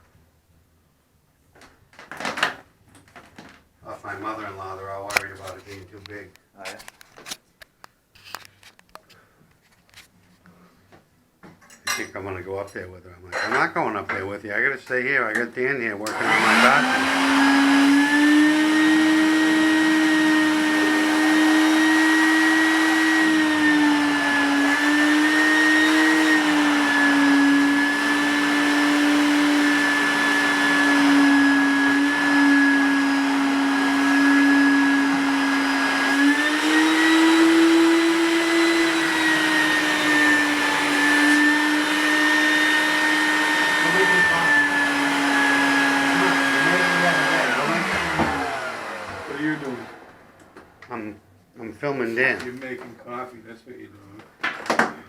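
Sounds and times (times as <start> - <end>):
electric coffee grinder whining: 16.0 - 50.7.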